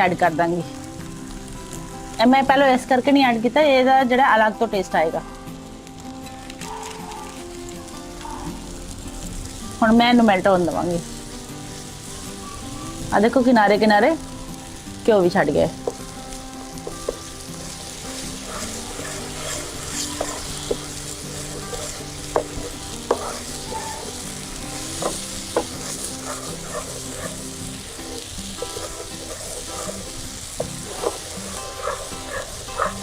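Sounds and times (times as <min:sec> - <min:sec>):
sauce sizzling in a pan: 0:00.0 - 0:33.0
utensil clicking against pan: 0:28.0 - 0:33.0.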